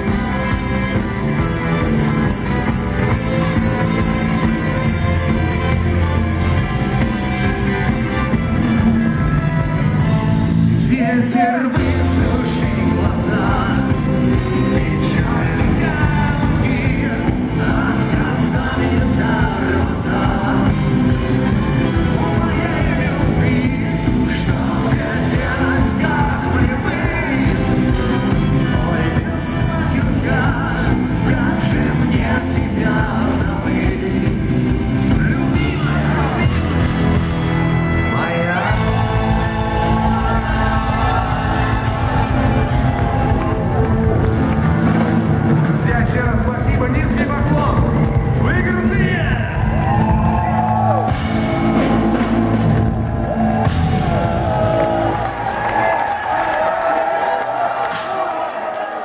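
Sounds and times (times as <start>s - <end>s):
rock band playing live: 0.0s - 56.4s
person singing: 10.8s - 45.0s.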